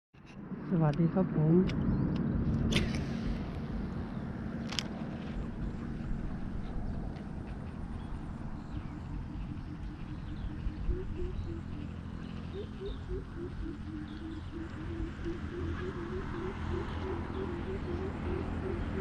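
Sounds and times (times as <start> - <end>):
steady low rumble: 0.3 - 19.0
faint bird chirps: 7.6 - 19.0.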